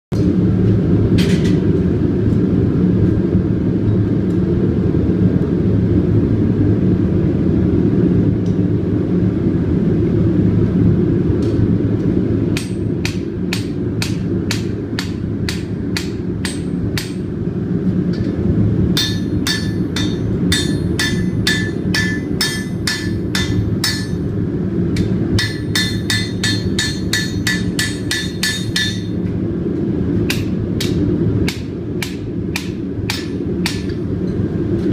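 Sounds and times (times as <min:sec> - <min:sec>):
hammer striking hot iron on anvil: 0:12.5 - 0:17.4, 0:18.1 - 0:29.4, 0:30.2 - 0:34.5.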